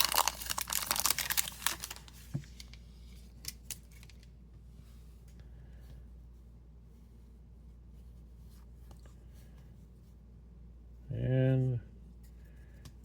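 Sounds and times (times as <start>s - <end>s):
plastic wrapper tearing and crinkling: 0.0s - 2.8s, 3.4s - 4.3s
cards rustling: 0.0s - 4.3s.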